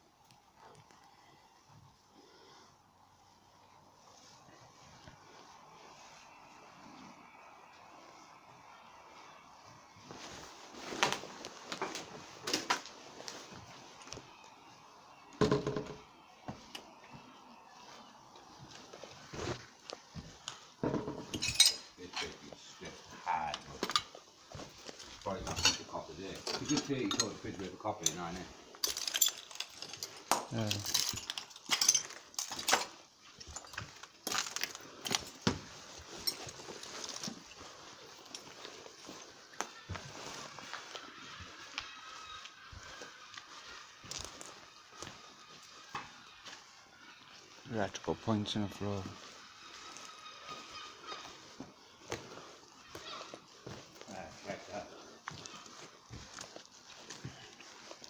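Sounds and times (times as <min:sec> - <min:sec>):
low steady background noise: 0:00.0 - 0:58.0
loose debris clinking and knocking: 0:20.8 - 0:21.9, 0:28.8 - 0:35.4.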